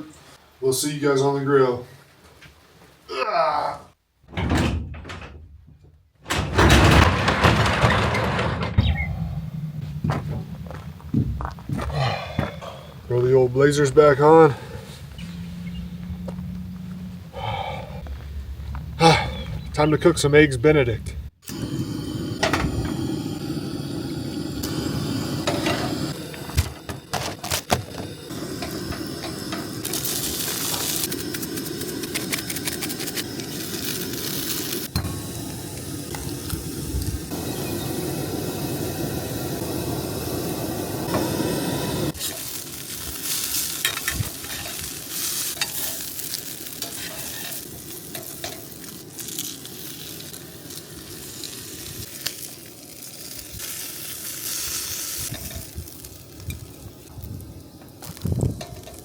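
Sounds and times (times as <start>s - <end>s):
food sizzling in a pan: 21.5s - 59.0s.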